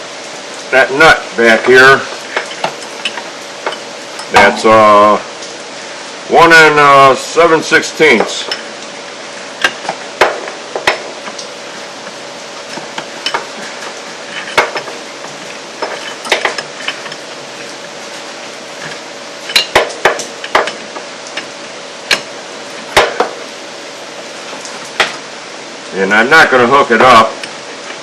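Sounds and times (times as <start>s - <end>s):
faint steady hum: 0.0s - 28.0s
metal tools clinking: 1.5s - 4.8s, 12.7s - 17.8s, 18.8s - 22.3s.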